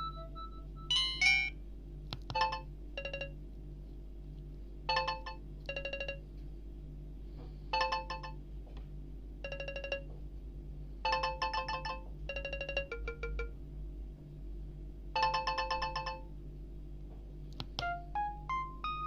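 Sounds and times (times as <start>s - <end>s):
phone ringtone beeps: 0.0s - 1.5s, 2.4s - 3.3s, 4.9s - 6.2s, 7.8s - 8.4s, 9.5s - 10.1s, 11.1s - 13.5s, 15.2s - 16.2s, 17.8s - 19.0s.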